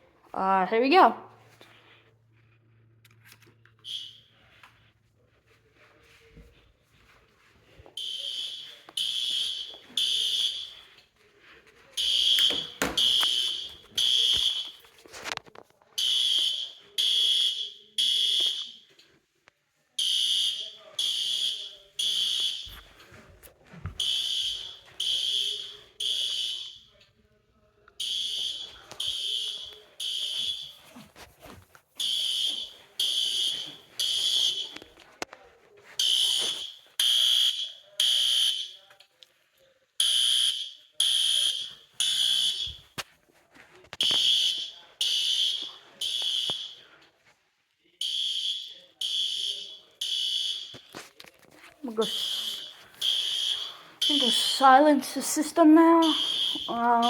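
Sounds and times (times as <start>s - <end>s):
fire alarm horn blasts: 3.8s - 4.6s, 8.0s - 10.8s, 12.0s - 14.8s, 16.0s - 18.8s, 20.0s - 22.8s, 24.0s - 26.9s, 28.0s - 30.8s, 32.0s - 34.8s, 36.0s - 38.8s, 40.0s - 42.8s, 44.0s - 46.8s, 48.0s - 50.8s, 51.9s - 54.7s, 56.0s - 57.0s.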